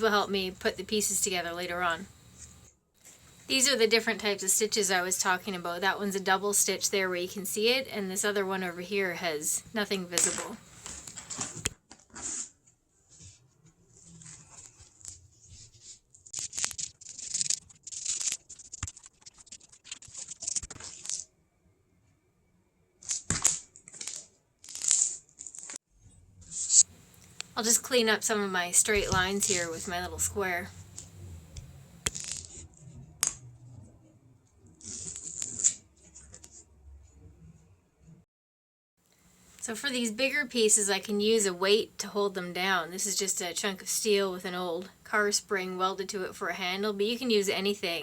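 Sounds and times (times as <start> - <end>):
fabric rustling and scratching: 10.3 - 21.2, 34.8 - 36.7.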